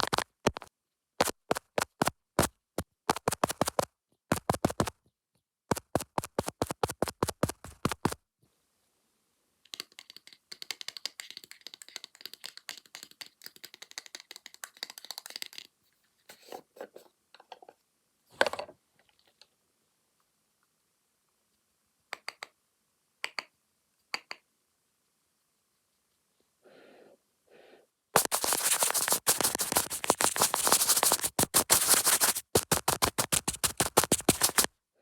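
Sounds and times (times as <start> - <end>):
tapping and scratching on lens: 0.0 - 5.0, 5.7 - 8.2, 28.2 - 34.7.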